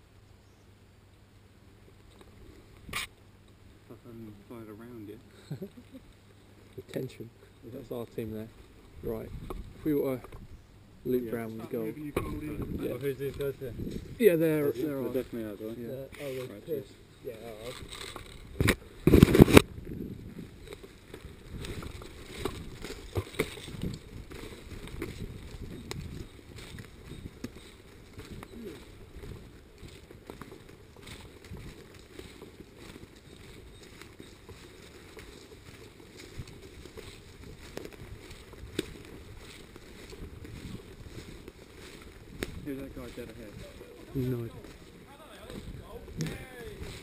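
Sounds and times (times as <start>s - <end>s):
wind noise on microphone: 8.9s - 10.8s, 12.0s - 14.2s, 17.7s - 30.1s, 31.0s - 31.9s, 36.2s - 47.0s
scraping against microphone: 17.5s - 29.0s.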